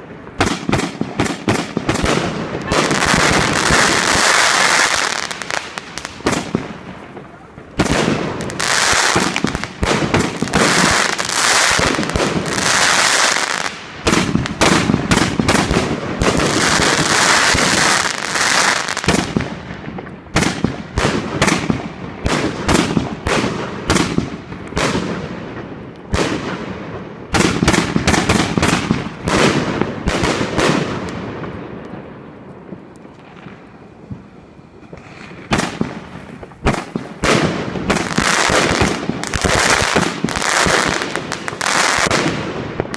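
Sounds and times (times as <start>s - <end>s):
fireworks launching and crackling: 0.0s - 42.9s.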